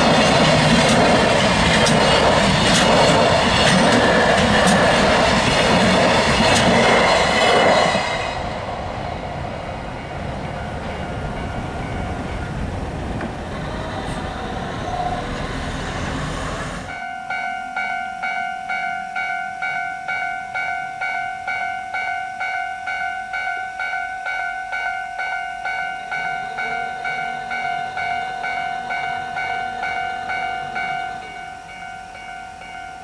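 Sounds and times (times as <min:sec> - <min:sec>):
train wheels clicking over rail joints: 0:00.0 - 0:17.0, 0:24.8 - 0:33.0
level-crossing alarm ringing: 0:00.0 - 0:33.0.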